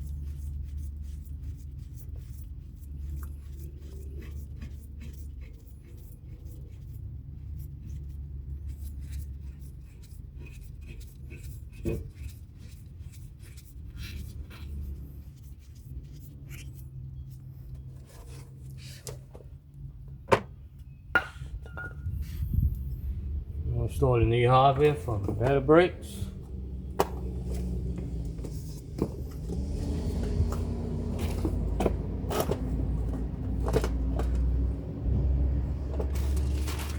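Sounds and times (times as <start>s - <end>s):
brake parts rubbing and scraping: 0.0s - 20.2s, 21.8s - 36.9s
steady low hum: 21.1s - 36.8s.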